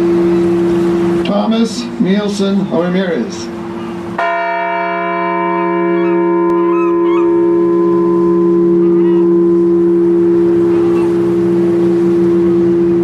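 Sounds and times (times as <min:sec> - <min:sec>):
bell ringing: 0:04.2 - 0:13.0.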